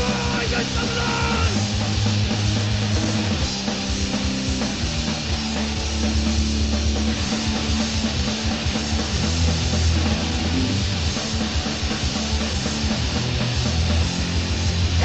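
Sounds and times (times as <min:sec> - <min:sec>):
bass guitar: 0:00.0 - 0:15.0
distorted electric guitar: 0:00.0 - 0:15.0
drum kit playing: 0:00.0 - 0:15.0.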